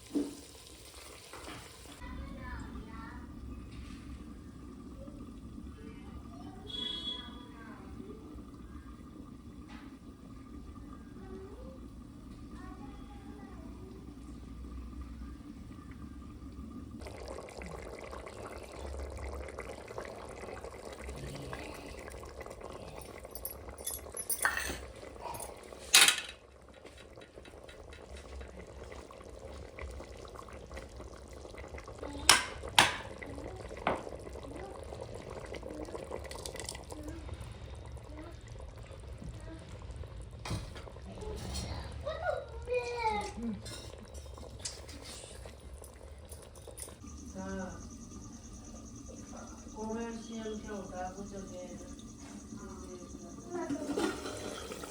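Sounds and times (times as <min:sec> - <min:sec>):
hiss of cooking in a pot: 0:00.0 - 0:54.9
utensil clinking against pot: 0:23.1 - 0:28.6, 0:32.3 - 0:33.1, 0:53.6 - 0:54.9.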